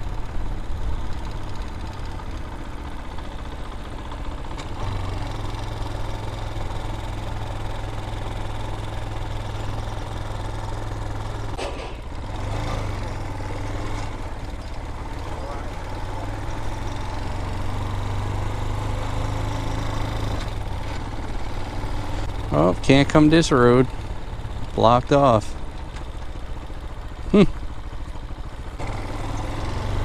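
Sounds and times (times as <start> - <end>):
dirt bike engine running: 0.0 - 30.0
brief knock: 11.6 - 12.0.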